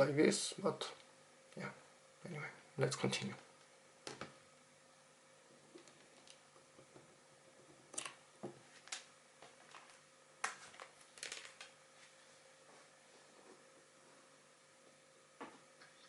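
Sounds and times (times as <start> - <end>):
faint steady hum: 0.0 - 16.0
clicks and rustles of handling cables: 5.7 - 7.1, 7.9 - 13.7.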